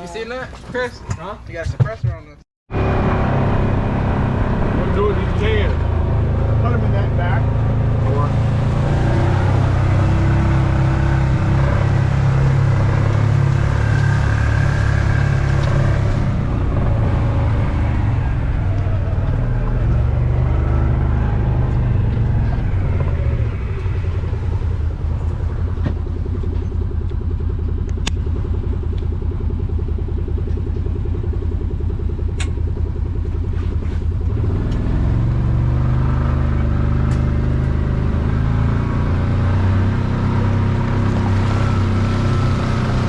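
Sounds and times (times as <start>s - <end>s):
vehicle engine running: 2.7s - 43.0s.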